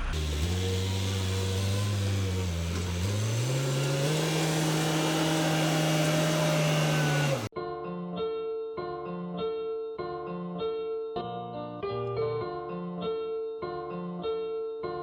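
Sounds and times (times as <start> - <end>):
backhoe engine running: 0.0 - 7.5.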